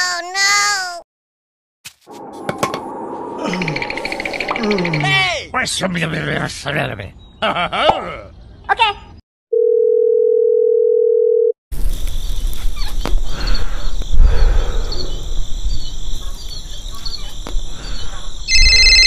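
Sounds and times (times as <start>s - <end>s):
low rumble: 2.1s - 5.3s
high-pitched whine: 2.1s - 5.4s.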